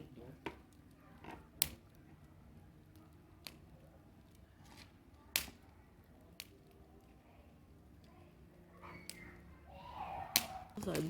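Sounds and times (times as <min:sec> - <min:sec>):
bonfire crackling: 0:00.0 - 0:11.0
sharp fire pops: 0:00.5 - 0:02.0, 0:04.3 - 0:06.7, 0:10.2 - 0:11.0.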